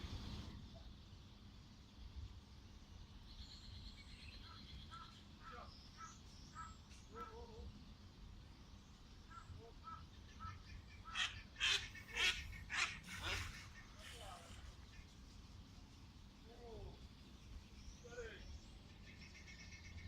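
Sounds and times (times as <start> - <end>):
cranes calling: 4.4 - 7.7, 9.2 - 15.2.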